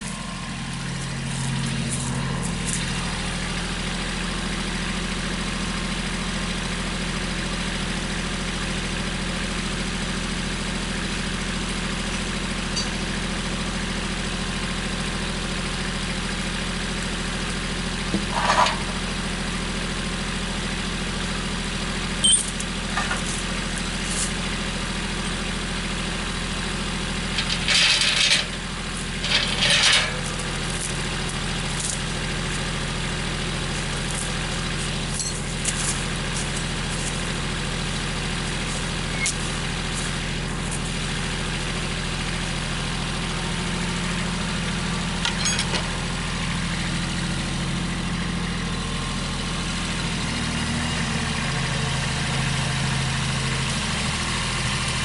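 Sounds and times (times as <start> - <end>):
engine idling: 0.0 - 55.0
short clanks or squeaks: 22.2 - 23.3, 29.1 - 30.2, 39.1 - 39.4, 45.2 - 45.9.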